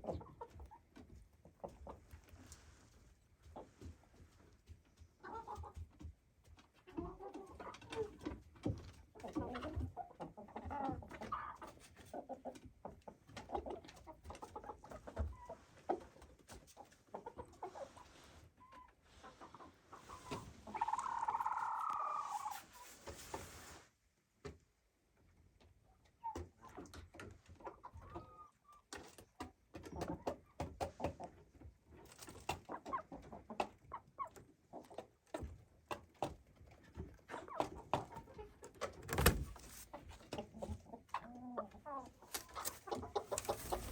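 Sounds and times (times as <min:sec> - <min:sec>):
chickens clucking softly: 0:00.0 - 0:23.5, 0:24.4 - 0:43.9
chicken drawn-out call: 0:20.0 - 0:22.6.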